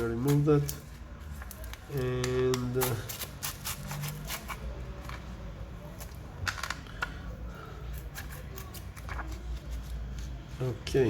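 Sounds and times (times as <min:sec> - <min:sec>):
plastic clicks and crackles: 0:06.0 - 0:07.2.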